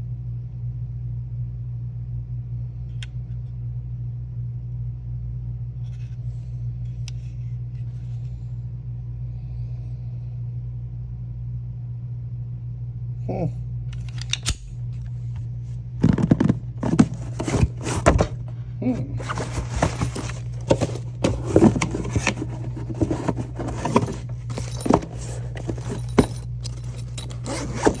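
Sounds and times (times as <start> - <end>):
steady low hum: 3.7 - 28.0
pistol handling clicks and scrapes: 14.0 - 14.7, 16.0 - 28.0.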